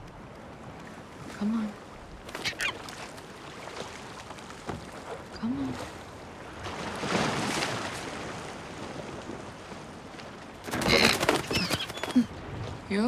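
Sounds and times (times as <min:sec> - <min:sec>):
seagull high calls: 0:02.3 - 0:02.9, 0:10.7 - 0:12.3.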